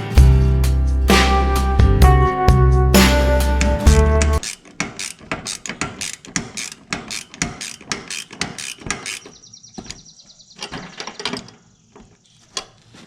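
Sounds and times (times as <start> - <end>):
ratchet wrench clicking: 4.4 - 9.4.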